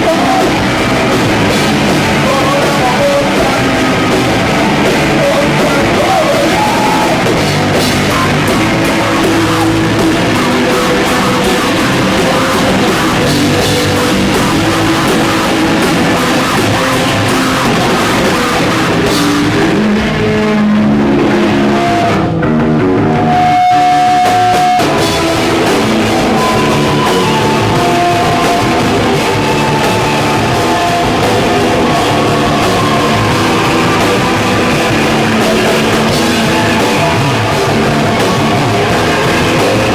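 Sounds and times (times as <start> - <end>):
hardcore band playing loud: 0.0 - 39.9
held distorted guitar notes: 0.0 - 39.9.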